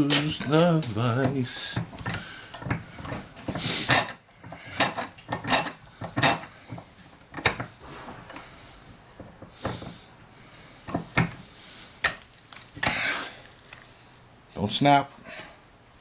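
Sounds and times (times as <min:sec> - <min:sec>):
metal rack clanking against vise: 0:00.1 - 0:08.5.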